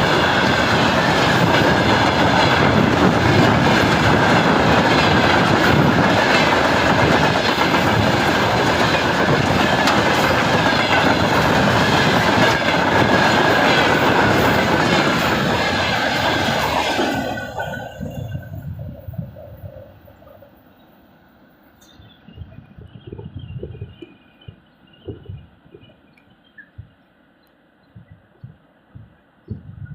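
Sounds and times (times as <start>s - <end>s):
wheels clattering over rail joints: 0.0s - 18.5s
freight train passing: 0.0s - 29.9s.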